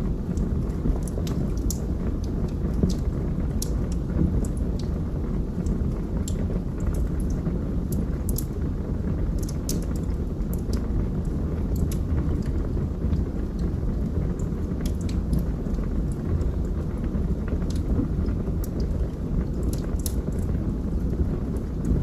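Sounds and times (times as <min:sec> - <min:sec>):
fire crackles and pops: 0:00.0 - 0:22.0
wood fire rumbling: 0:00.0 - 0:22.0.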